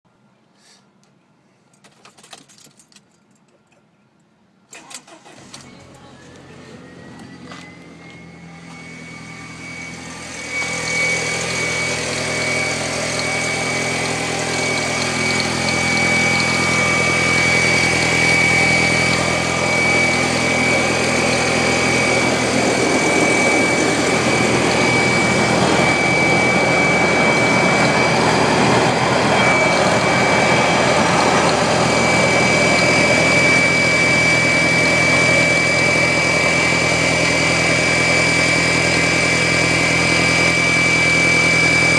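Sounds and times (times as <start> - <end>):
car engine idling: 4.8 - 37.5
high-pitched steady whine: 5.2 - 41.9.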